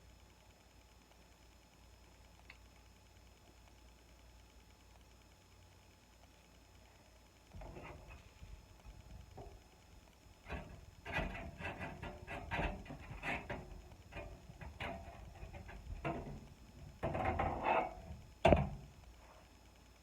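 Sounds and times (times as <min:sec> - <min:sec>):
scraping of motherboard in case: 0:07.6 - 0:08.3, 0:10.5 - 0:18.9.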